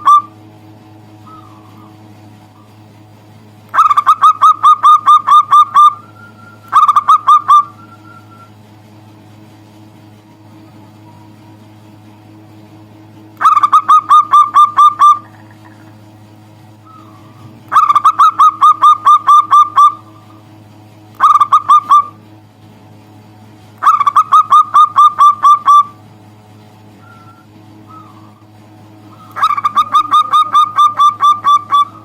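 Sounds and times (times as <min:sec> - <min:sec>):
dove cooing: 0:00.0 - 0:00.3, 0:01.2 - 0:02.8, 0:03.7 - 0:08.6, 0:13.4 - 0:16.0, 0:16.8 - 0:20.4, 0:21.2 - 0:22.2, 0:23.8 - 0:26.0, 0:27.0 - 0:32.0
low hum: 0:00.0 - 0:32.0.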